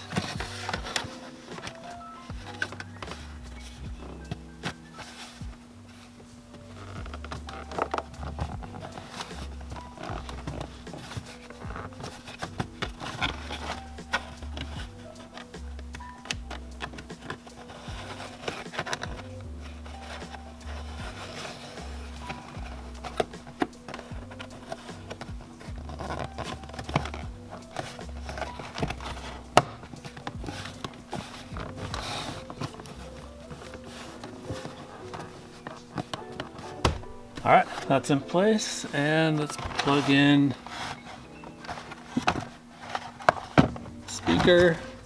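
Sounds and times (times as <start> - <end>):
plastic parts clicking: 0.0 - 45.0
background music with bass line: 2.0 - 35.9.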